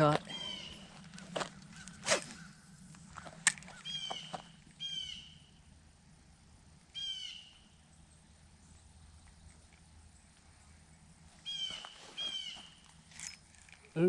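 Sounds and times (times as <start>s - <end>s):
bird calling: 0.0s - 5.8s, 6.9s - 7.8s, 11.4s - 13.6s.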